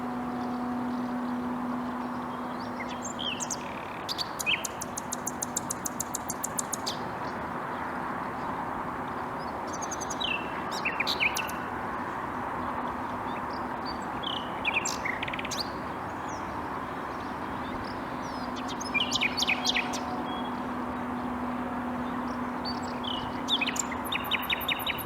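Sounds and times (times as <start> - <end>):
low hum: 0.0 - 6.1, 17.2 - 25.0
nightingale singing: 0.0 - 7.0, 17.6 - 21.1, 21.9 - 25.0.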